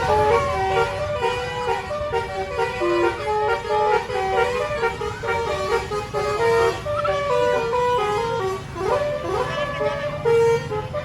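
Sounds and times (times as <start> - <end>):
bus melody horn: 0.0 - 11.0.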